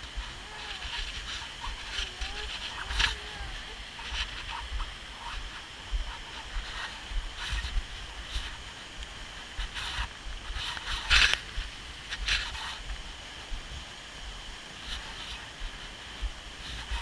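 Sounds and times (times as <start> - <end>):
waterfall rushing: 0.0 - 5.8
wind buffeting microphone: 0.0 - 17.0.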